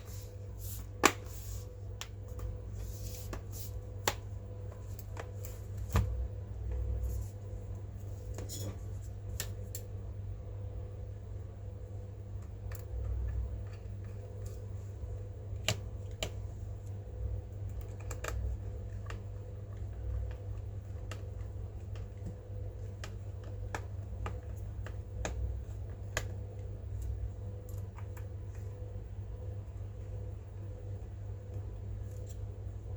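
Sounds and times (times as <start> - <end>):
steady low hum: 0.0 - 32.9.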